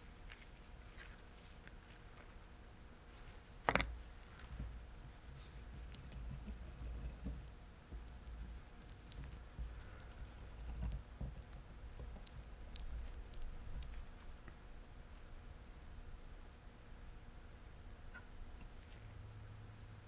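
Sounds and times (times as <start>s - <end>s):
scraping and rustling: 0.0s - 14.4s.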